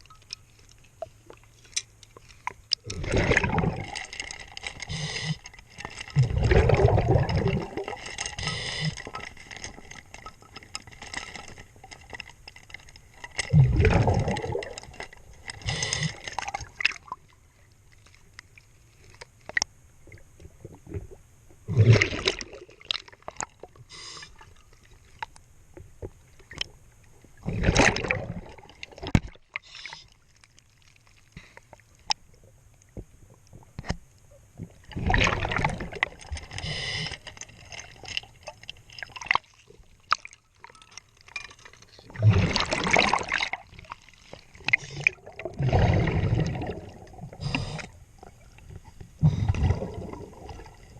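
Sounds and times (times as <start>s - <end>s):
regulator bubbles gurgling: 2.8s - 10.2s, 13.4s - 17.4s, 20.0s - 23.8s, 27.3s - 29.3s, 34.5s - 37.0s, 41.9s - 50.9s.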